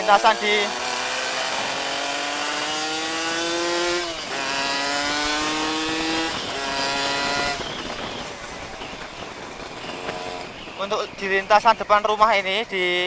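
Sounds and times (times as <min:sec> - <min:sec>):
motorcycle engine accelerating: 0:00.0 - 0:11.2.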